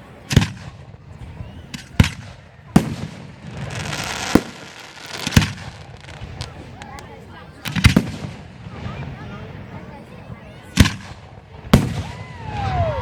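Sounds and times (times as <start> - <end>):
fireworks bangs: 0.2 - 13.0
fireworks hissing crackle: 2.7 - 8.5.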